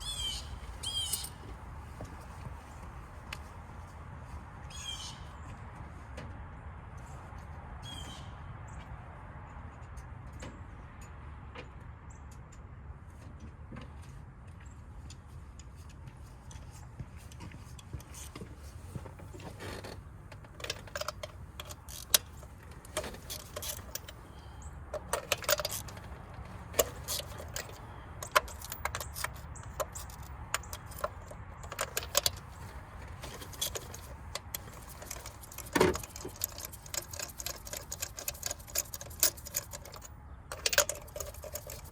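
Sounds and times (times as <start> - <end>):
steady low hum: 0.0 - 3.7
sharp clicks: 20.3 - 41.9
metal hand tools clinking: 20.6 - 41.9.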